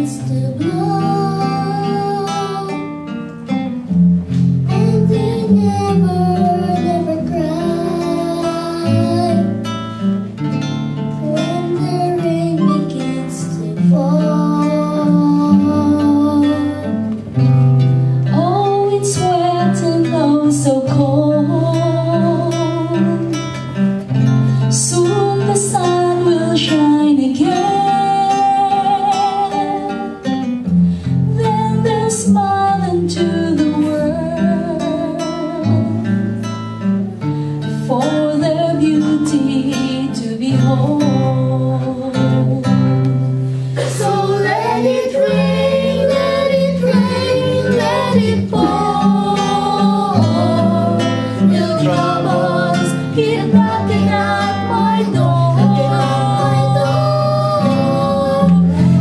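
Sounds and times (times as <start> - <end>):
person singing: 0.0 - 2.9, 4.7 - 9.7, 11.2 - 17.1, 24.8 - 30.2, 43.8 - 59.0
guitar accompaniment: 0.0 - 59.0
sustained bass notes: 43.2 - 59.0.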